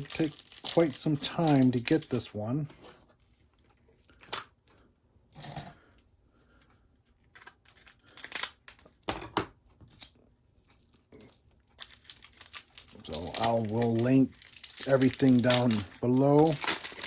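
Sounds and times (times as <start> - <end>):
packaging rustling and crinkling: 0.0 - 4.3, 10.6 - 17.0.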